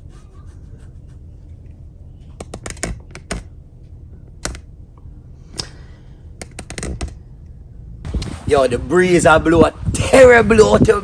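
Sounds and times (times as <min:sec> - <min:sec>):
wind rumble on microphone: 0:06.7 - 0:11.0.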